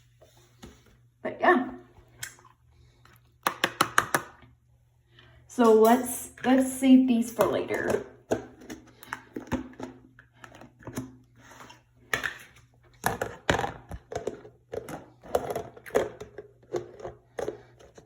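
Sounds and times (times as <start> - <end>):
clicks taps and knocks of containers: 3.4 - 4.5, 5.6 - 11.2, 12.1 - 18.0.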